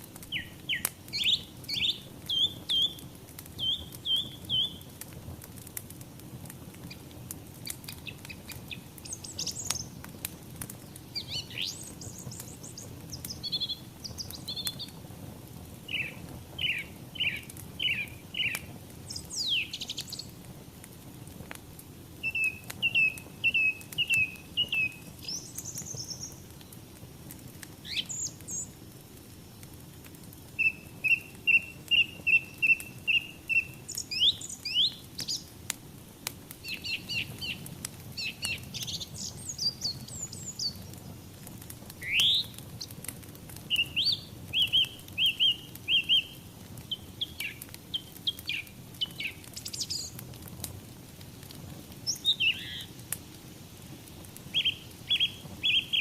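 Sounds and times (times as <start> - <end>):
wood fire crackling: 0.0 - 56.0
songbirds chirping and singing: 3.6 - 4.9, 10.8 - 14.9, 15.9 - 20.3, 22.2 - 26.6, 30.6 - 35.5, 36.6 - 40.9, 42.0 - 42.6, 43.7 - 50.2.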